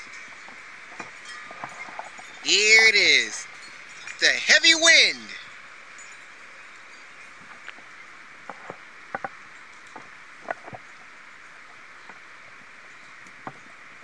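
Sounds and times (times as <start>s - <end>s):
steady high hiss: 0.0s - 14.0s.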